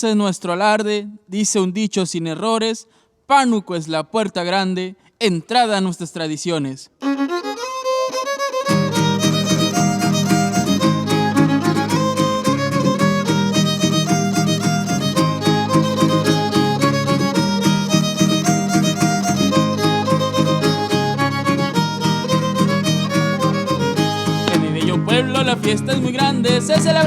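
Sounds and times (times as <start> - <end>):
guitars strumming rhythmically: 7.0 - 27.0
violin melody: 7.0 - 27.0.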